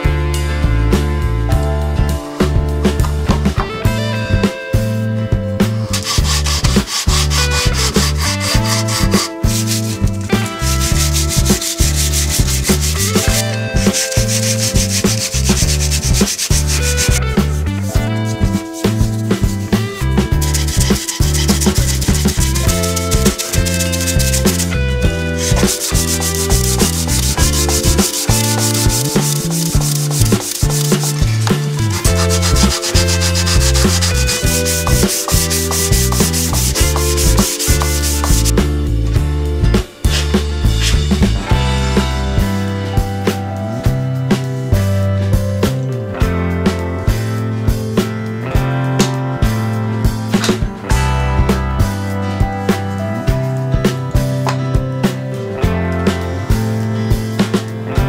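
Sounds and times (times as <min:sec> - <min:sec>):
background music with beat: 0:00.0 - 0:58.0
sandpaper rubbing on wood: 0:05.9 - 0:19.6, 0:20.4 - 0:38.5
shaker rattle: 0:20.4 - 0:38.5.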